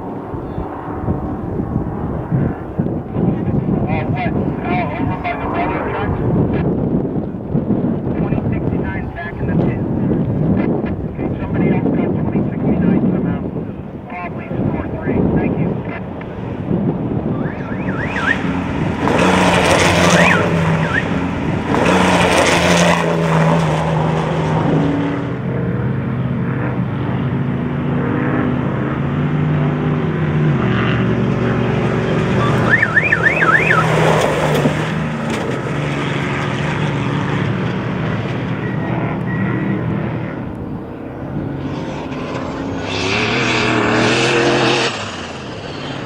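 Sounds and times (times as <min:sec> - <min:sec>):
race truck engine running hard: 0:00.0 - 0:46.0
bursts of rushing noise: 0:13.9 - 0:46.0.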